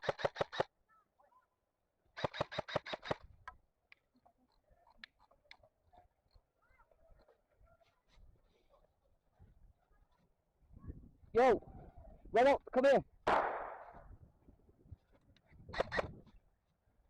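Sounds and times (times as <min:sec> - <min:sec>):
airsoft gun firing bursts: 0:00.0 - 0:00.7, 0:02.2 - 0:03.2, 0:13.3 - 0:14.0.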